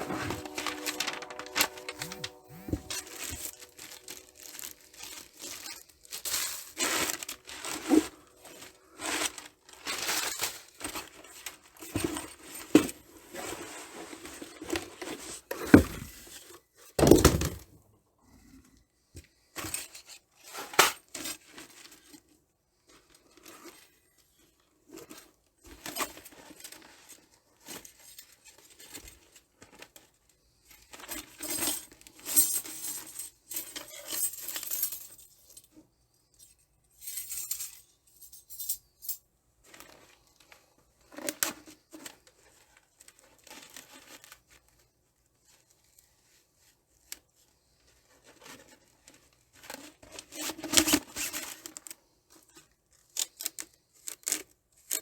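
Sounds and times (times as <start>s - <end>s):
packaging tearing and crinkling: 0.0s - 10.8s.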